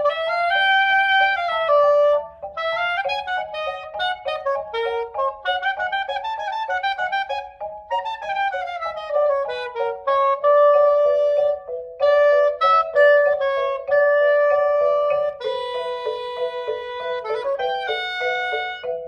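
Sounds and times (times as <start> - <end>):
woodwind melody: 0.0 - 19.0.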